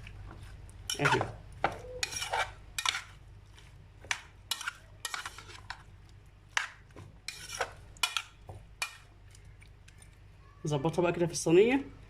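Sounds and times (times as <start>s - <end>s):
utensil scraping a cooking dish: 0.3s - 5.9s, 6.5s - 9.2s.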